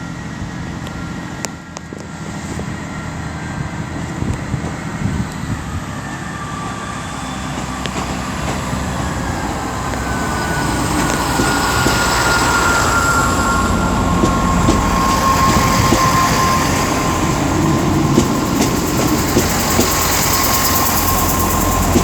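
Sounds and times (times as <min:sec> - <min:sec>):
diesel train engines pulling away: 0:00.0 - 0:22.0
thin high squeal: 0:08.9 - 0:22.0.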